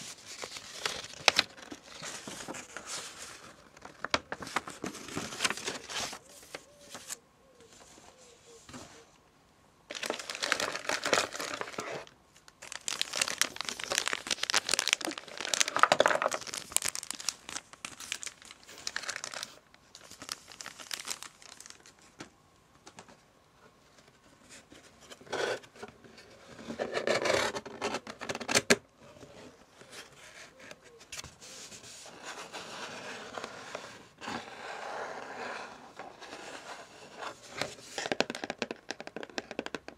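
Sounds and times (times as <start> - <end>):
packaging crinkling: 9.9 - 22.2.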